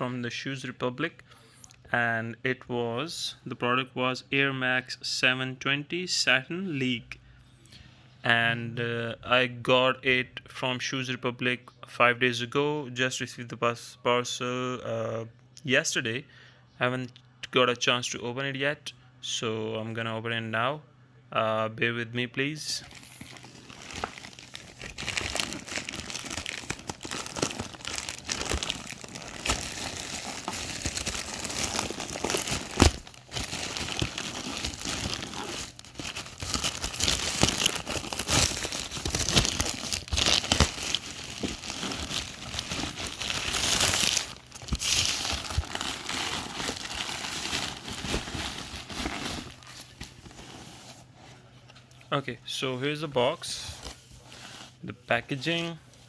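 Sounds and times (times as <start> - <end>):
wrapping torn and crumpled: 22.8 - 50.6.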